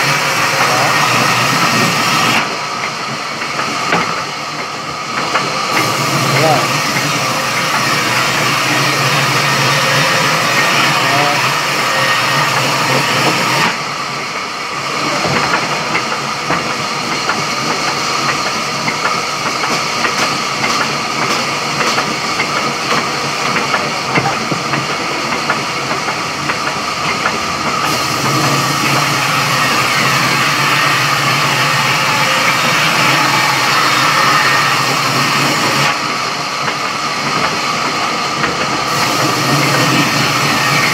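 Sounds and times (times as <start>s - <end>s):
saw cutting a log: 0.0s - 2.5s, 5.7s - 13.8s, 27.7s - 36.0s, 38.9s - 40.9s.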